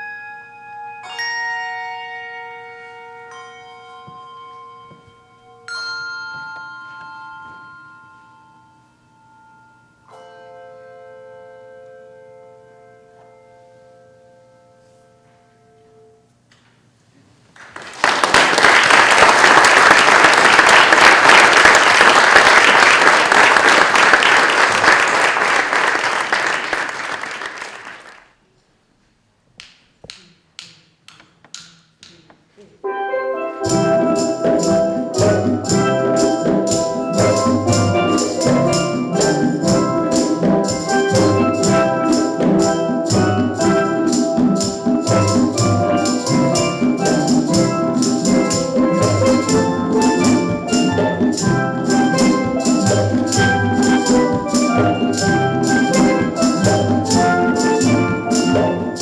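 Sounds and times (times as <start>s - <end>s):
audience applauding: 17.6s - 28.3s
steel drum band playing: 18.4s - 26.8s, 33.3s - 59.0s.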